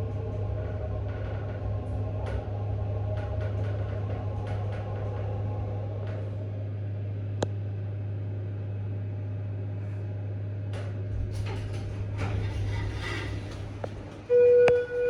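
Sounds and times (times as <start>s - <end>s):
elevator low hum: 0.0s - 15.0s
knocks and rattles: 10.8s - 14.3s.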